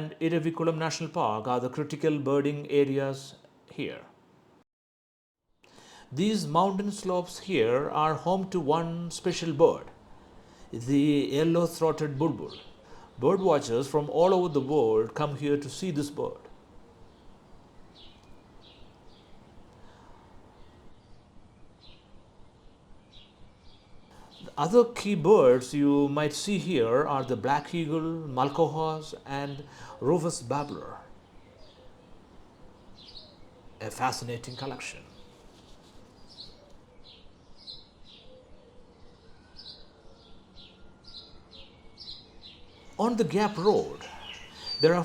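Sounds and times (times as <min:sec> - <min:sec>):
background hiss: 0:00.0 - 0:04.6, 0:05.6 - 0:38.3, 0:39.0 - 0:45.0
small bird chirping: 0:31.1 - 0:33.8, 0:34.9 - 0:45.0
bird calling high notes: 0:42.8 - 0:45.0.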